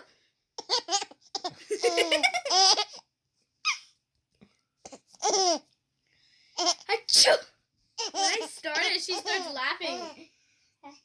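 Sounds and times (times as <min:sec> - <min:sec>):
baby laughing: 0:00.6 - 0:03.0, 0:05.2 - 0:05.6, 0:08.0 - 0:10.2.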